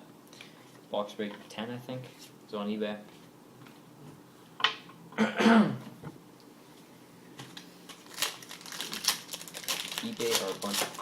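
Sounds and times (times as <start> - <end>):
cards rustling and clicking: 7.4 - 11.0.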